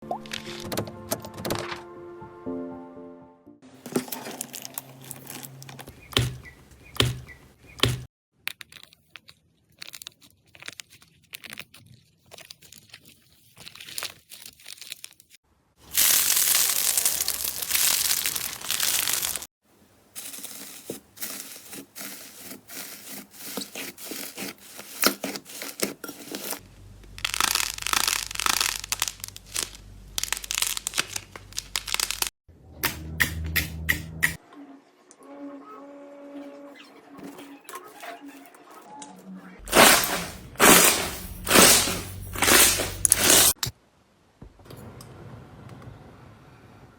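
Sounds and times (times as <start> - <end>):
slime crackling and tearing: 8.5 - 19.5, 20.3 - 32.3.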